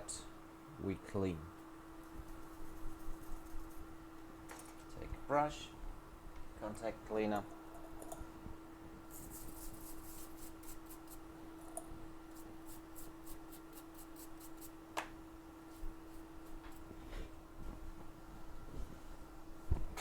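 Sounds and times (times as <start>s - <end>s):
faint hum: 0.0s - 20.0s
small brush scrubbing circuit board: 2.1s - 3.8s, 9.1s - 11.3s, 12.3s - 14.8s, 15.7s - 16.9s.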